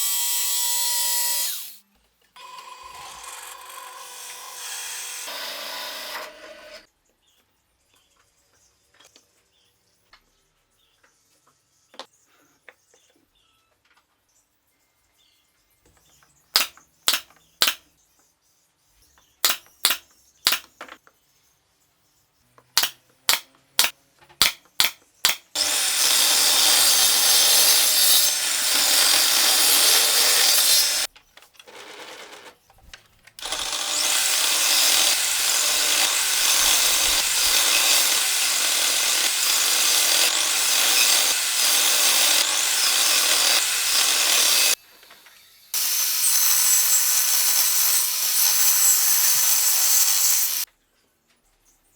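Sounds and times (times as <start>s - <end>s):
tool rasping into wood: 25.6s - 31.1s, 33.4s - 44.8s.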